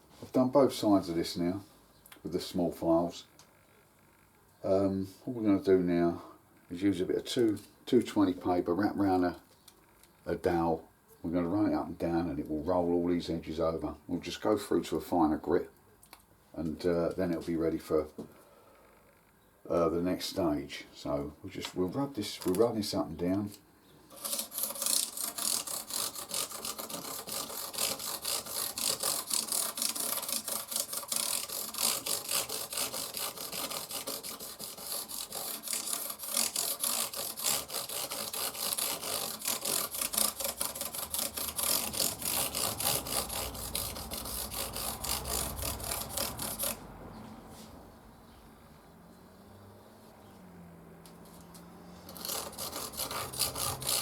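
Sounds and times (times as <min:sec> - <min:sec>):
sandpaper rubbing on guitar frets: 0:24.1 - 0:46.8, 0:52.0 - 0:54.0.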